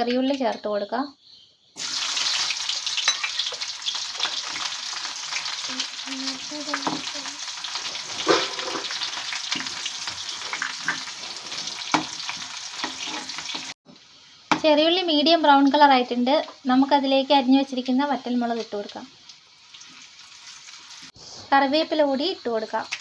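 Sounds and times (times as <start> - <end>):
shallots sizzling in oil: 1.8 - 23.0.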